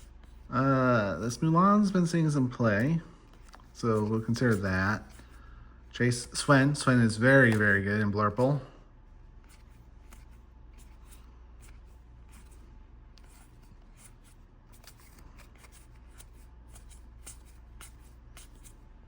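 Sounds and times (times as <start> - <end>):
trading cards shuffling: 2.8 - 5.4, 6.2 - 8.6, 9.3 - 18.8.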